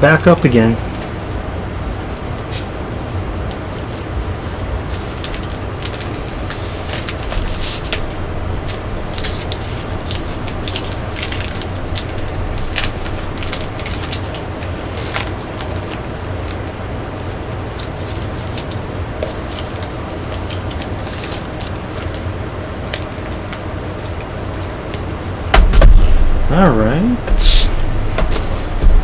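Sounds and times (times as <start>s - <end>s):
steady low hum: 0.0s - 29.0s
packaging rustling and clicking: 4.9s - 25.1s.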